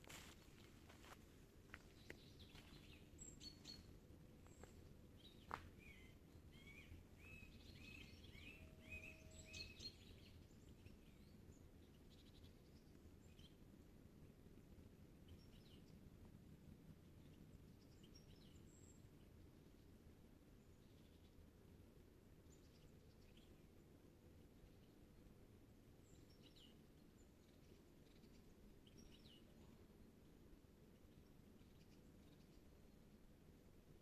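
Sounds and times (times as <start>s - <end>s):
bird chirps: 2.0s - 11.4s.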